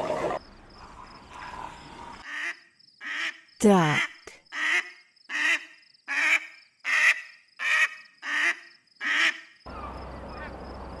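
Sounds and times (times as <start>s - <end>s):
duck quacking: 4.0s - 10.6s.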